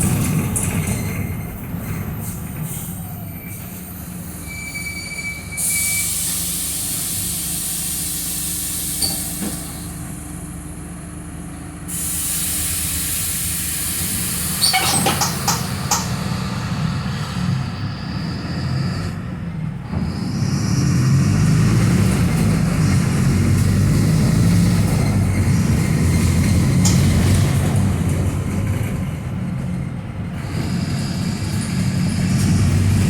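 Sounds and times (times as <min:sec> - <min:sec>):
bus diesel engine running: 0:00.0 - 0:33.0
loud air hiss: 0:05.6 - 0:10.2, 0:11.9 - 0:15.8.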